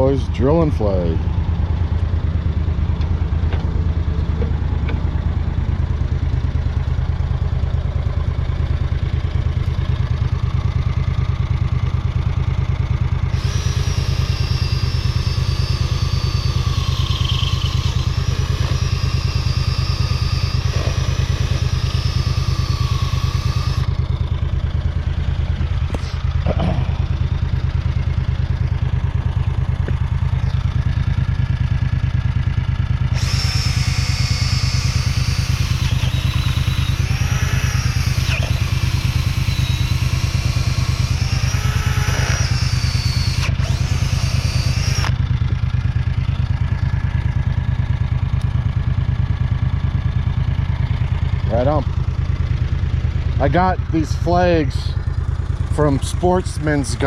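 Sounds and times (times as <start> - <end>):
small engine running: 0.0 - 57.0
high wavering whine: 13.3 - 24.1, 33.0 - 45.2.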